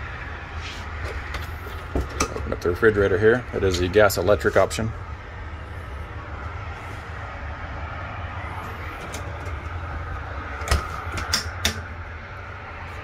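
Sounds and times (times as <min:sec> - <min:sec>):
steady low hum: 0:00.0 - 0:13.0
refrigerator door clicks and knocks: 0:10.6 - 0:11.8.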